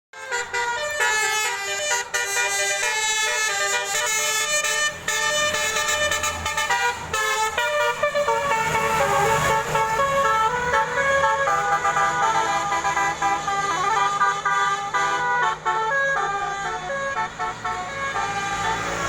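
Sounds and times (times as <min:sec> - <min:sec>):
multi-tone bus horn tune: 0:00.1 - 0:19.0.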